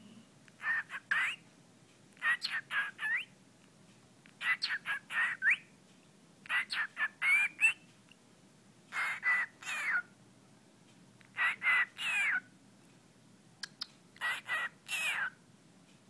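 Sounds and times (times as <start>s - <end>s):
cockatiel mimicking speech: 0.6s - 1.4s, 2.2s - 3.3s, 4.4s - 5.6s, 6.5s - 7.8s, 8.9s - 10.0s, 11.3s - 12.4s, 14.2s - 15.3s.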